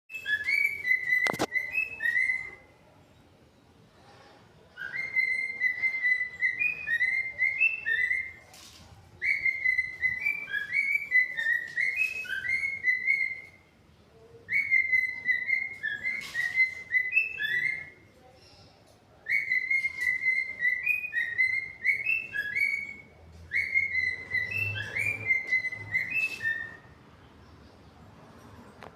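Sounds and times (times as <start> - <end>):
cockatiel whistling a tune: 0.1 - 2.7, 4.8 - 8.4, 9.2 - 13.6, 14.5 - 18.0, 19.2 - 26.9.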